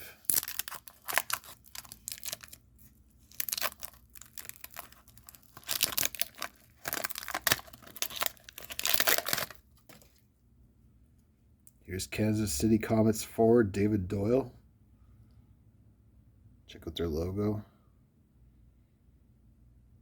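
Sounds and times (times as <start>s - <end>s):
wrapper tearing and crinkling: 0.0s - 10.2s.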